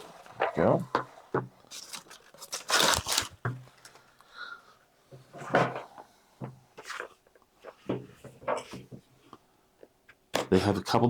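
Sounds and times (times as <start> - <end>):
packaging tearing and crinkling: 1.7 - 3.4.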